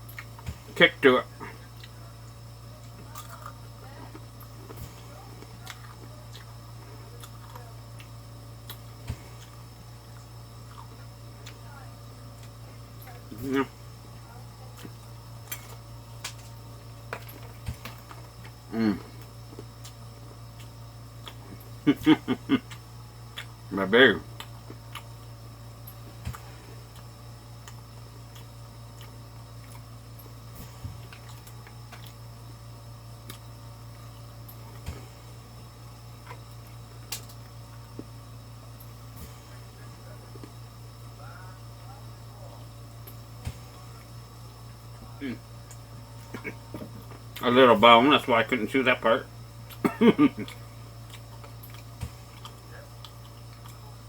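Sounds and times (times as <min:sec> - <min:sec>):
steady low hum: 0:00.0 - 0:54.0
chewing crispy fried chicken: 0:01.4 - 0:13.4, 0:14.0 - 0:38.2, 0:49.4 - 0:54.0.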